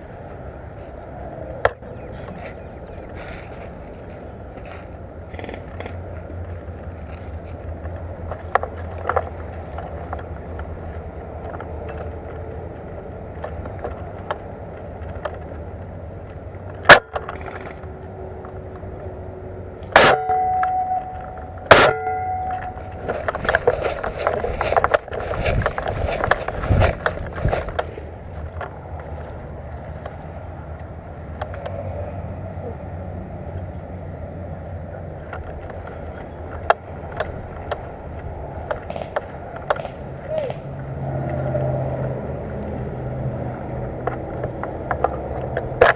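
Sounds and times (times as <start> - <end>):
dense rustling and crackling: 2.0 - 16.4, 17.2 - 17.9, 21.0 - 30.4
airsoft gun shots: 19.9 - 20.7, 21.7 - 22.3
metallic ring: 19.9 - 24.2.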